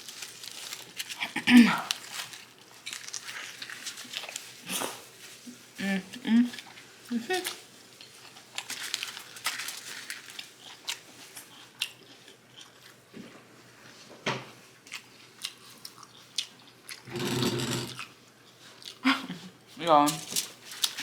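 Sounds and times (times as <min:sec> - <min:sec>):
chewing and biting food: 0:14.8 - 0:17.1.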